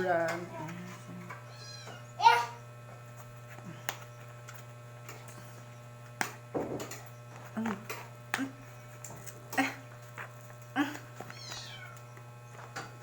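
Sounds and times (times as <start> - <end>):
low electrical hum: 0.0 - 13.0.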